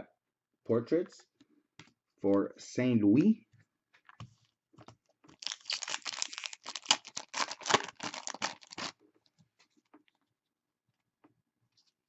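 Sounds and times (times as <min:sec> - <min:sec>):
foil wrapper tearing and crinkling: 0:05.4 - 0:09.0.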